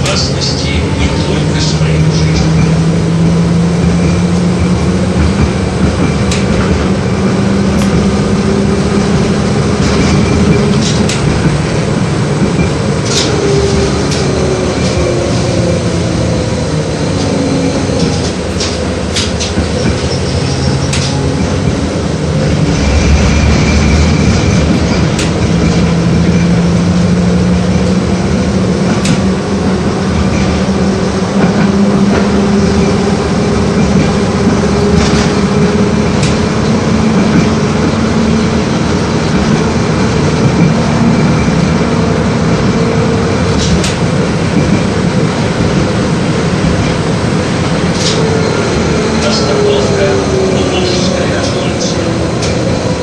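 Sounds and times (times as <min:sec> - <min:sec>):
tram motor hum: 0:00.0 - 0:53.0
wheels clicking over rails: 0:03.8 - 0:16.3.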